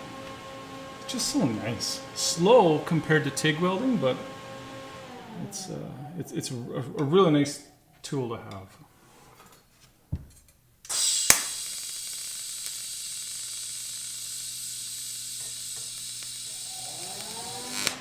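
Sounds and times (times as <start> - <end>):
welding arc hissing: 10.9 - 18.0.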